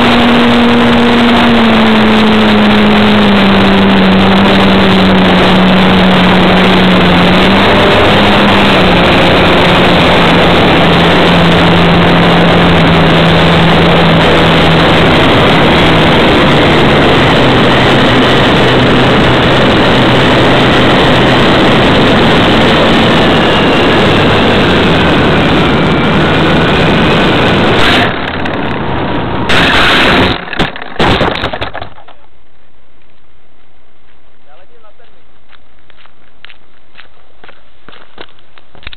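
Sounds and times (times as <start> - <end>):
model plane motor humming: 0.0 - 28.9
wind rush over microphone: 0.0 - 31.7
loud jolts of plane landing: 0.0 - 32.2.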